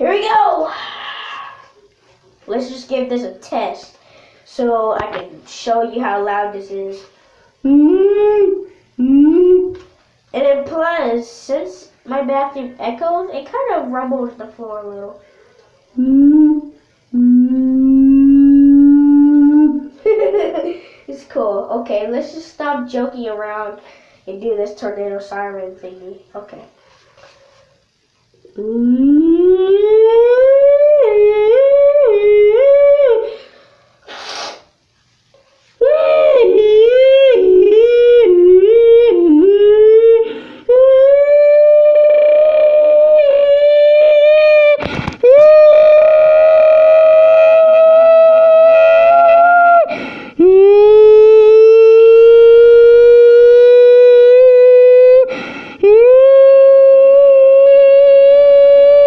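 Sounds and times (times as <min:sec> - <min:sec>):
person imitating a siren: 0:07.6 - 0:09.8, 0:16.0 - 0:20.0, 0:28.5 - 0:33.4, 0:35.8 - 0:59.0
quick breath: 0:33.3 - 0:34.7, 0:49.9 - 0:50.4, 0:55.3 - 0:55.8.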